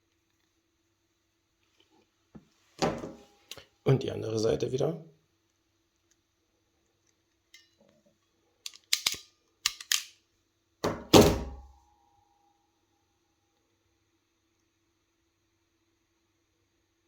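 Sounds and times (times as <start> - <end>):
ratchet pliers clicking: 8.6 - 10.1.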